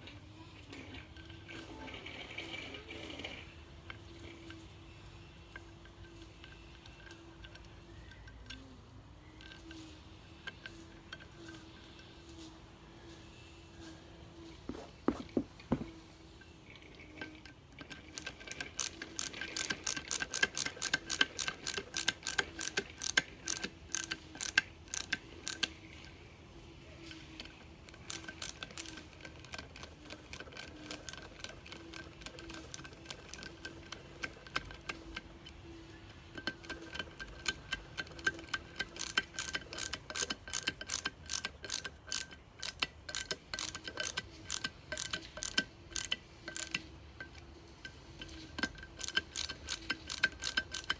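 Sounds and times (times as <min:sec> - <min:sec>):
hand ratchet clicking: 0:18.2 - 0:25.7, 0:36.4 - 0:46.8, 0:48.2 - 0:50.9.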